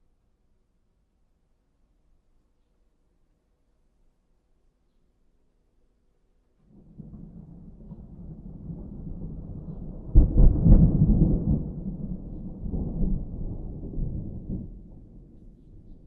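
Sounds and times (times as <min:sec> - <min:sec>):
distant thunder rumbling: 0:06.7 - 0:16.0.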